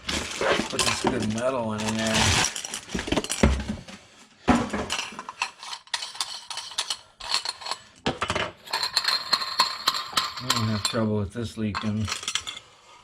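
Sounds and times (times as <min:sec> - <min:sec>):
metal clinking and knocking: 0:04.5 - 0:11.1, 0:11.7 - 0:12.7.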